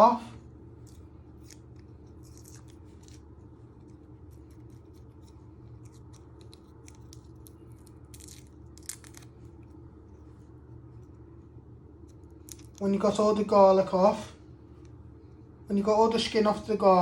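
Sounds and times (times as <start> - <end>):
steady low hum: 0.0 - 17.0
garlic skin crackling: 0.8 - 9.4.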